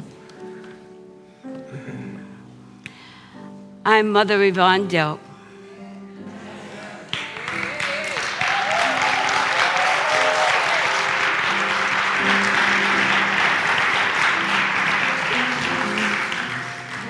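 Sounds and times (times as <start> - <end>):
instrumental music with held notes: 0.0 - 17.0
audience applauding: 7.0 - 17.0.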